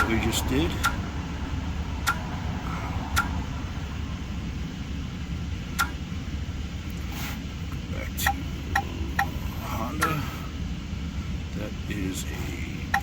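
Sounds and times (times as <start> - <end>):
steady low rumble: 0.0 - 13.0
sharp clicks: 0.8 - 1.0, 2.0 - 2.3, 3.1 - 3.4, 5.7 - 6.0.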